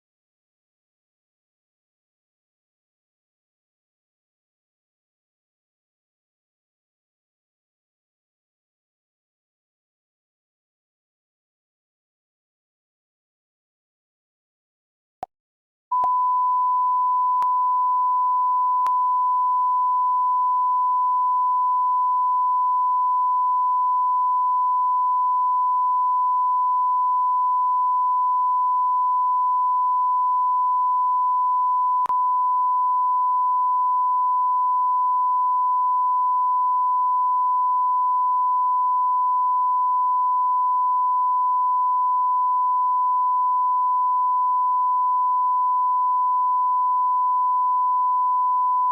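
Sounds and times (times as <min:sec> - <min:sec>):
click: 0:16.0 - 0:16.2, 0:32.0 - 0:32.2.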